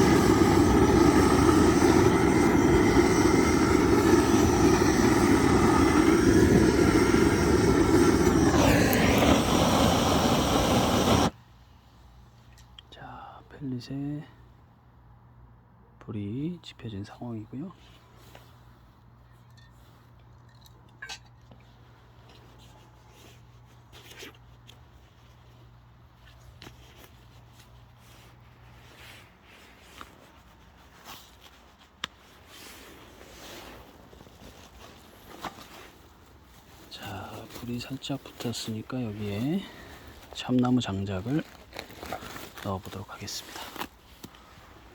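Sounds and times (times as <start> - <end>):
fire-lighting tool roaring: 0.0 - 11.4.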